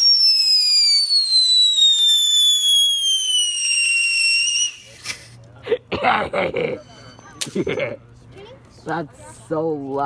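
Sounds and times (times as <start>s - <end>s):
whistling firework shrieking: 0.0s - 4.9s.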